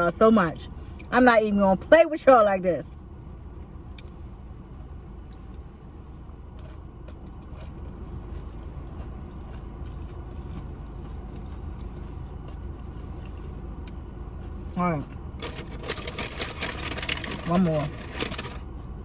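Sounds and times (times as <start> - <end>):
low background rumble: 0.0 - 19.0
person chewing food: 6.4 - 19.0.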